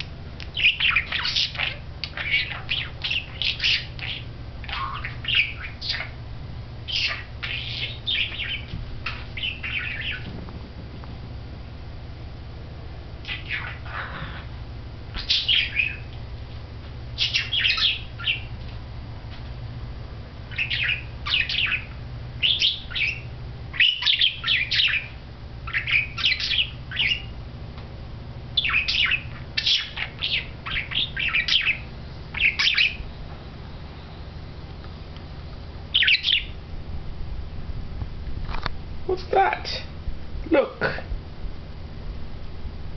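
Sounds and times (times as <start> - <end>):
budgerigar chattering: 0.0 - 6.2, 6.9 - 10.3, 13.2 - 14.5, 15.1 - 16.1, 17.2 - 18.5, 20.5 - 27.3, 28.6 - 33.0, 36.0 - 36.6
low steady hum: 0.0 - 42.9.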